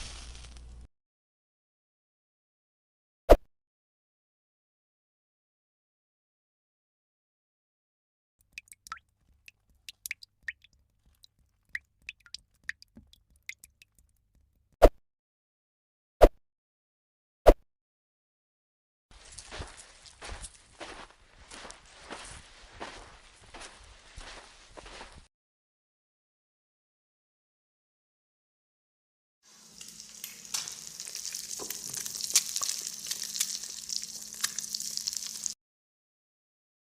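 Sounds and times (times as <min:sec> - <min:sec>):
hot oil spitting and crackling: 0:00.0 - 0:00.8, 0:08.4 - 0:14.5, 0:29.5 - 0:35.6
fish frying in hot oil: 0:29.5 - 0:35.6.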